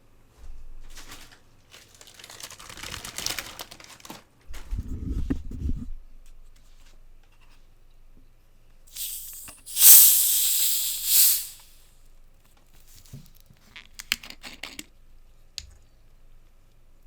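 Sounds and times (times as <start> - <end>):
soda fizzing hiss: 8.9 - 11.7.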